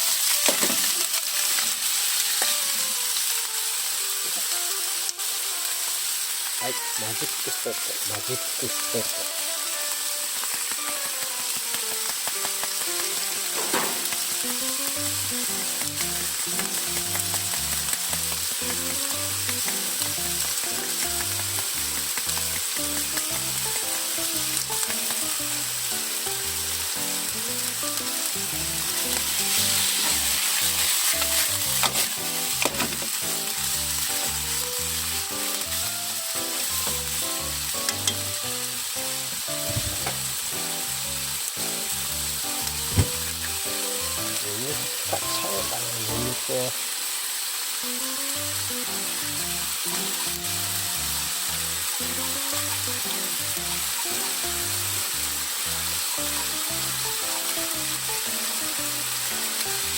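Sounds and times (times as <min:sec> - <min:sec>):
meat sizzling in frying pan: 0:00.0 - 0:59.9
stirring scrapes and knocks: 0:15.5 - 0:23.4.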